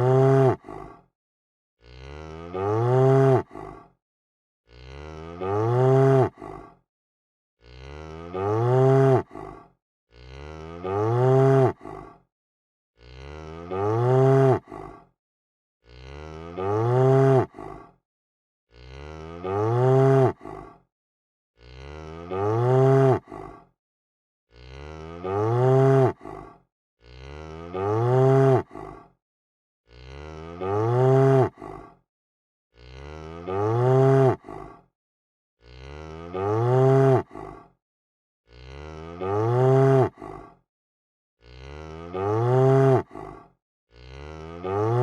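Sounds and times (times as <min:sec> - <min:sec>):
cow mooing: 0:00.0 - 0:00.6, 0:01.8 - 0:03.4, 0:04.7 - 0:06.4, 0:07.6 - 0:09.3, 0:10.1 - 0:11.8, 0:13.0 - 0:14.7, 0:15.9 - 0:17.5, 0:18.7 - 0:20.4, 0:21.6 - 0:23.3, 0:24.5 - 0:26.2, 0:27.1 - 0:28.8, 0:29.9 - 0:31.6, 0:32.8 - 0:34.4, 0:35.6 - 0:37.3, 0:38.5 - 0:40.2, 0:41.4 - 0:43.1, 0:43.9 - 0:45.0.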